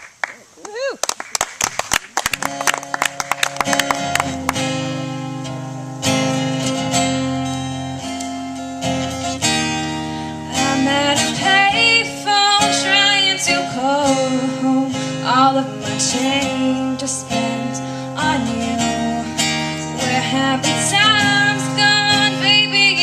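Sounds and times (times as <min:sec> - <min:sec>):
guitar strumming chords: 0:02.5 - 0:23.0
person singing: 0:10.4 - 0:23.0.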